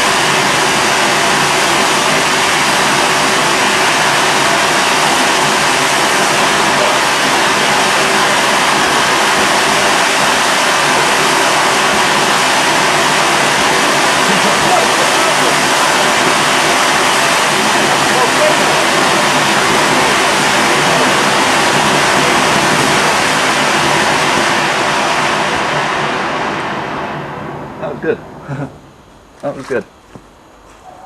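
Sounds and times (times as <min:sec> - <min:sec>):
firework fountain hissing: 0:00.0 - 0:28.7.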